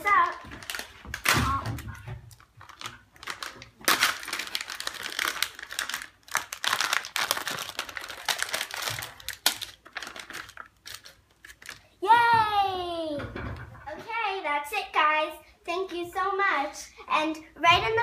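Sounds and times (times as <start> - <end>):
packaging rustling and tearing: 0.0 - 11.9.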